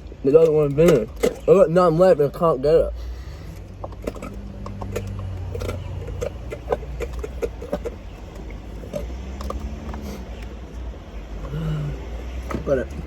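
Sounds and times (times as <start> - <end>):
car engine idling: 0.0 - 13.0
spoon scraping a cup: 3.4 - 10.4.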